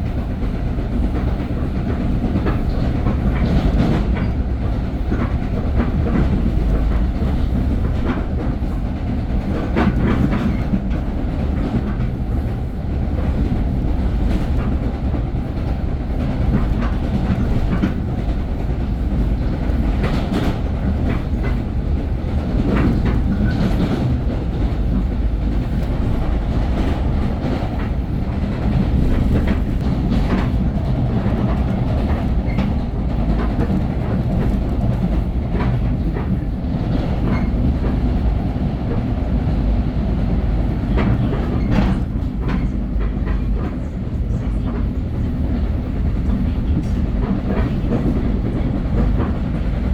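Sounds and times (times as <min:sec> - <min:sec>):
train rumbling on track: 0:00.0 - 0:49.9.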